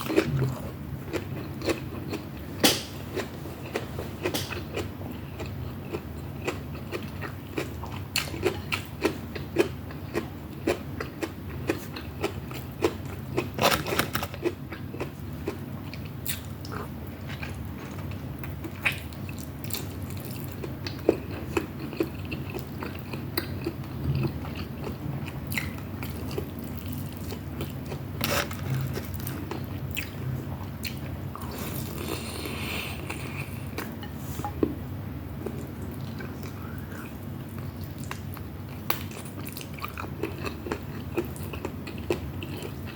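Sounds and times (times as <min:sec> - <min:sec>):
person chewing and crunching food: 0:00.0 - 0:34.7, 0:35.4 - 0:42.9
steady low hum: 0:00.0 - 0:42.9.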